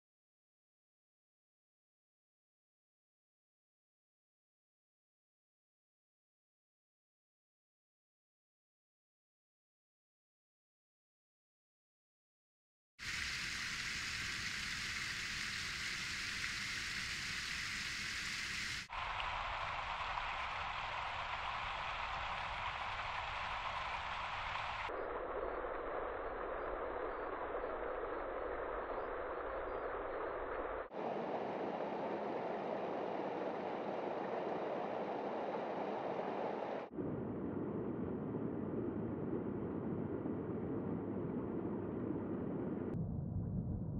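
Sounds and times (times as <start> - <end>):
wind and trail noise: 13.0 - 42.9.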